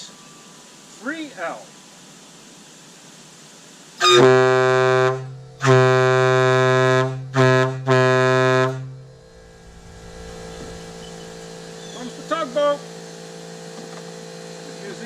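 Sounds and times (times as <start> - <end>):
deep air horn blasts: 4.0 - 12.2.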